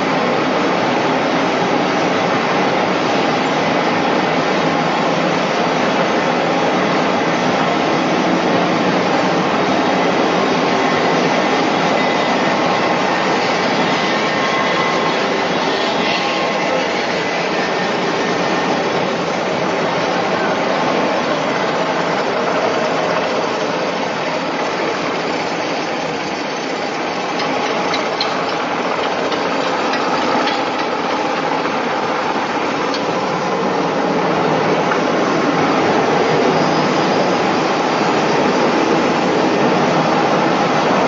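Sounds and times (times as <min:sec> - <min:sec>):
factory machinery running: 0:00.0 - 0:41.0.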